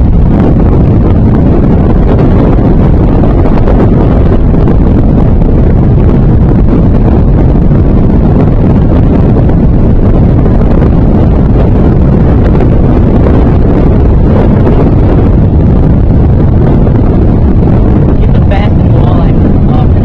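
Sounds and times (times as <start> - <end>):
wind rumble on microphone: 0.0 - 20.0.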